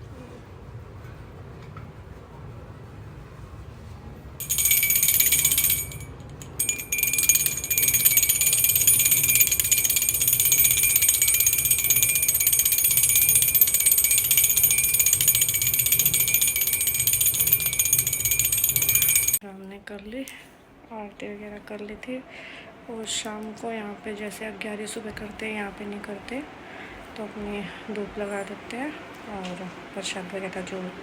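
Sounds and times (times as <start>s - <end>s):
hand bell ringing rapidly: 4.4s - 19.4s.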